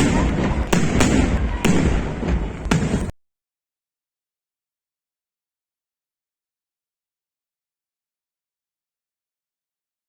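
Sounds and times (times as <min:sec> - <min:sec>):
sharp firework bang: 0:00.0 - 0:03.1
fireworks bursts rumbling: 0:00.0 - 0:03.2.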